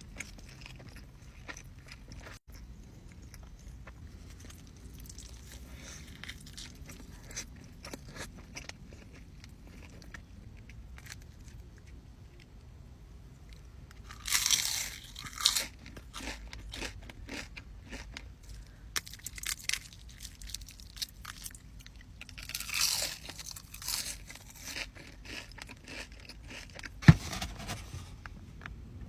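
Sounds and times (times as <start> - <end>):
crackly chewing: 0.0 - 12.5, 13.5 - 27.0
crunchy food bites: 14.1 - 18.0, 22.3 - 27.4.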